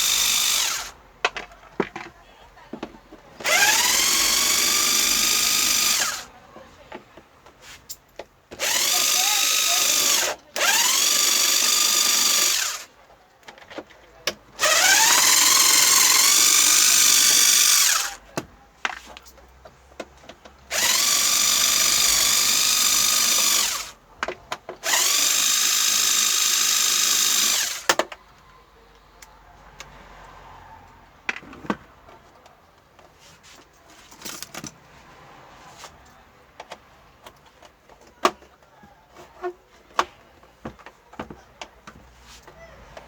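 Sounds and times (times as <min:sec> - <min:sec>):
electric screwdriver whirring: 0:00.0 - 0:00.9, 0:03.4 - 0:06.3, 0:08.6 - 0:12.9, 0:14.6 - 0:18.2, 0:20.7 - 0:24.0, 0:24.8 - 0:28.0.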